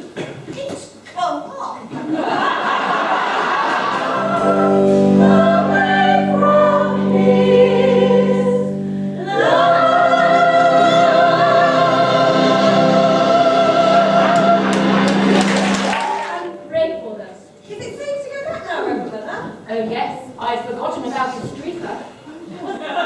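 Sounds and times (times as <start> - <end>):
choir singing long notes: 3.0 - 17.0.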